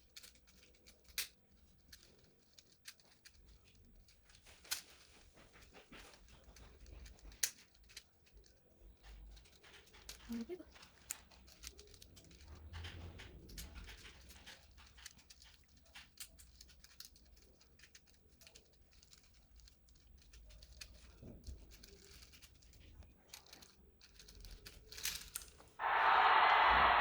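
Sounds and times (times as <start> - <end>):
plastic puzzle toy clicking: 0.0 - 25.6
loud steady hiss: 25.8 - 27.0.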